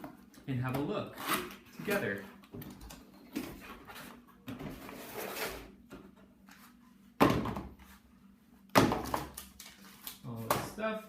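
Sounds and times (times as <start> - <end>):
packaging rustling and scraping: 3.4 - 5.8.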